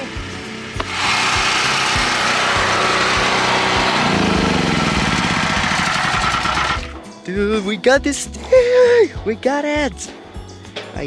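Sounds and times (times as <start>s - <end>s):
angle grinder grinding steel: 0.8s - 7.0s.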